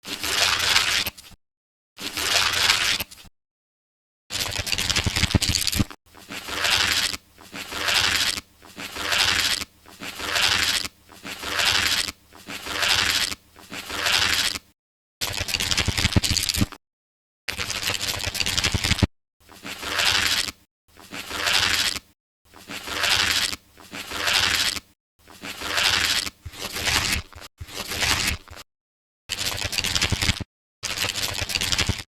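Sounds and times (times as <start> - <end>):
book pages riffling: 4.4 - 14.6, 19.5 - 28.6.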